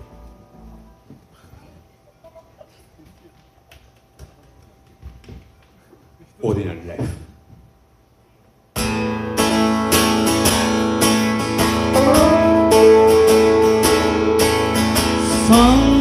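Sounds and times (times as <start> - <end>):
lead melody with sliding notes: 8.8 - 16.0
rockabilly band playing: 8.8 - 16.0.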